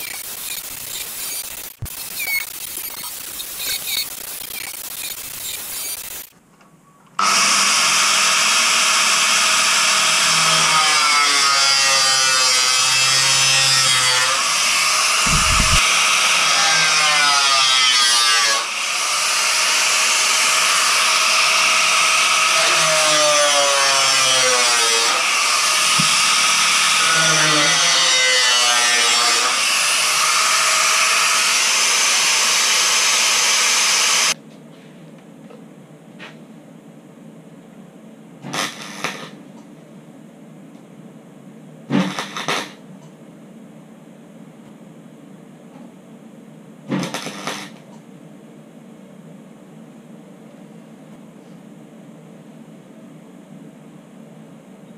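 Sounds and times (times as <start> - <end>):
power tool cutting steel: 0.0 - 6.3, 7.2 - 34.4.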